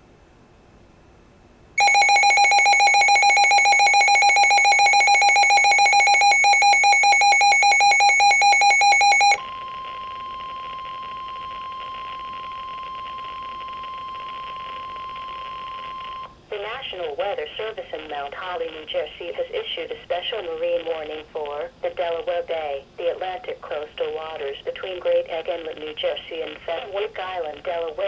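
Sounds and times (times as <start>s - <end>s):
pulsing multi-tone alarm beeping: 1.8s - 12.4s
steady warning alarm tone: 1.8s - 16.3s
radio reception hiss: 16.5s - 28.0s.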